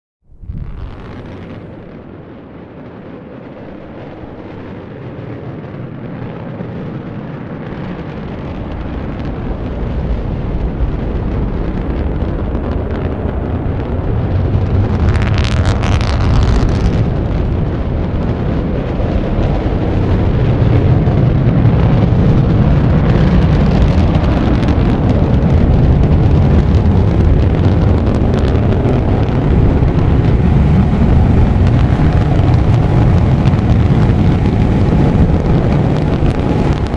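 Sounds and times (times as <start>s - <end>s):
rocket engine roar: 0.2s - 36.9s.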